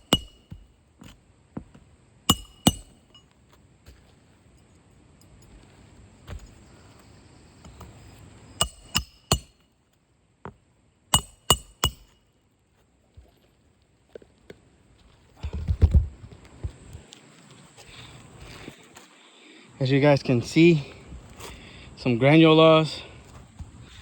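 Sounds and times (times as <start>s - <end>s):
hammer striking metal: 0.0s - 0.6s, 2.3s - 3.2s, 8.6s - 9.6s, 11.2s - 12.2s.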